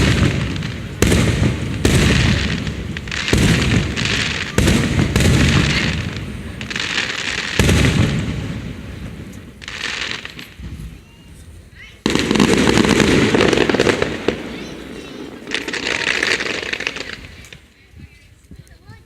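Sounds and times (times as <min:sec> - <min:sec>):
fireworks booming: 0:00.0 - 0:17.7
crackling hiss: 0:00.0 - 0:18.7.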